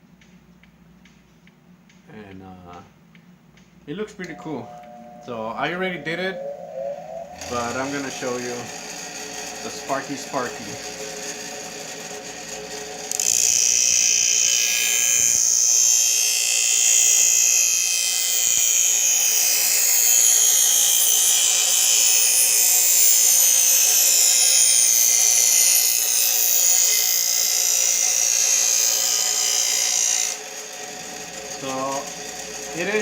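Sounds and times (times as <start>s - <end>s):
blade grinding on grinding wheel: 7.4s - 33.0s.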